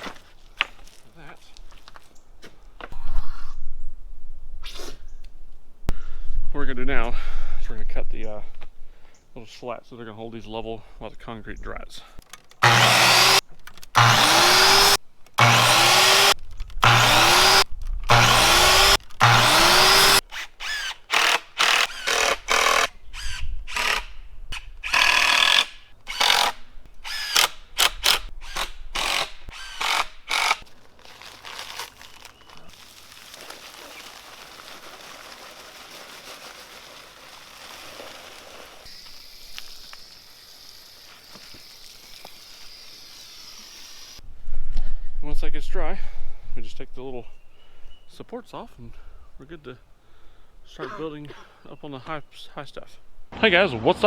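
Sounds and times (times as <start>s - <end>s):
power tool bursts: 12.6s - 30.6s, 38.8s - 44.2s.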